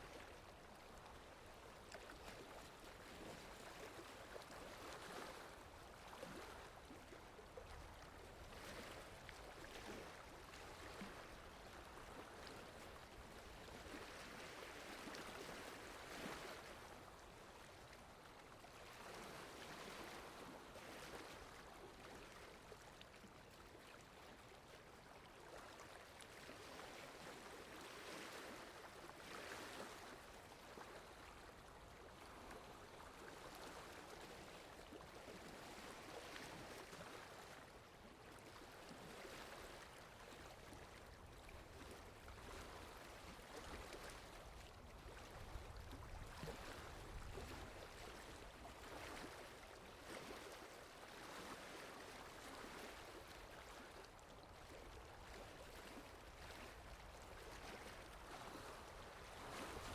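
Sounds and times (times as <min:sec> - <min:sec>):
water lapping: 0:00.0 - 0:59.9.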